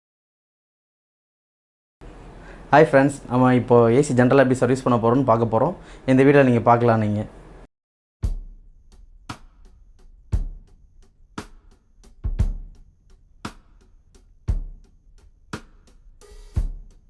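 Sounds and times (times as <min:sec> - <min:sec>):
slow drum-kit beat: 0:08.2 - 0:17.0.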